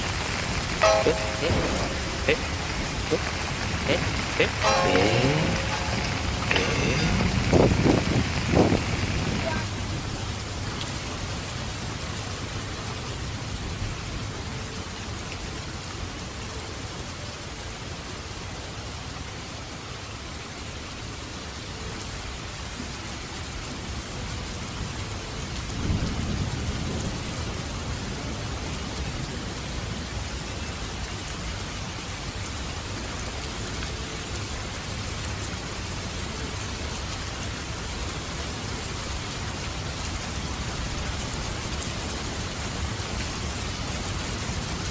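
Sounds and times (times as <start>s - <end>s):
heavy rain falling: 0.0s - 44.9s
low rumble of thunder: 25.8s - 28.4s.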